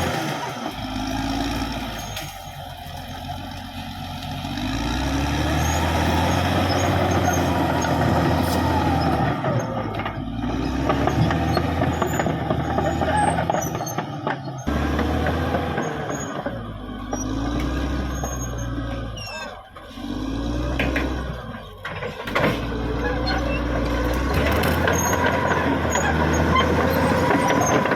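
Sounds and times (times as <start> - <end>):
bulldozer diesel engine under load: 0.0 - 27.9
metal knocks and clanks: 20.6 - 27.9.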